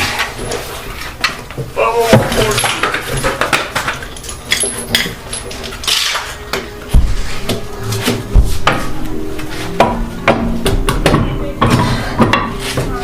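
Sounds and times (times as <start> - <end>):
metal tools clinking and clanking: 2.1 - 6.5
heavy thuds: 6.9 - 12.5.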